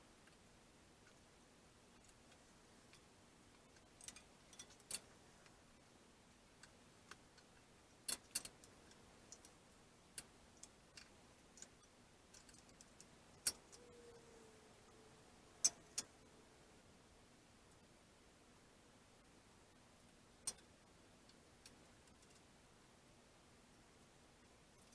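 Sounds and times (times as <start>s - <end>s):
faint steady tone: 0.0s - 24.9s.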